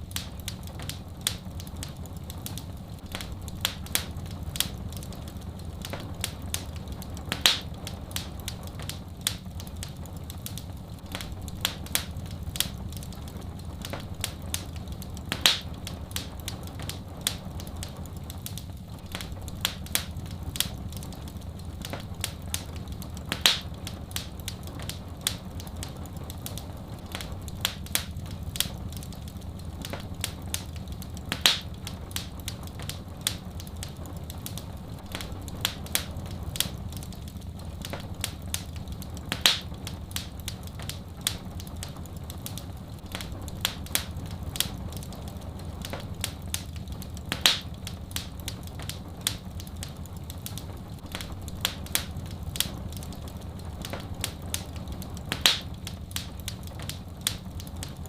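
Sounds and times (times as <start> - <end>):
wood fire crackling: 0.0 - 58.0
loud fire pop: 47.4 - 47.7, 55.4 - 55.7.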